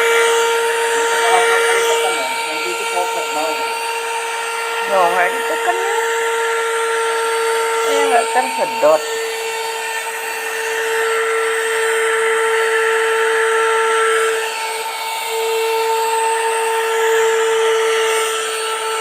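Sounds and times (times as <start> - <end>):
handheld vacuum cleaner running: 0.0 - 19.0.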